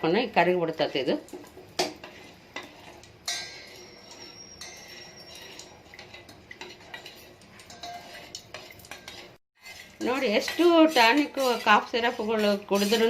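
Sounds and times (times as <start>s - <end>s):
metal spoon clinking in pan: 2.6s - 13.0s.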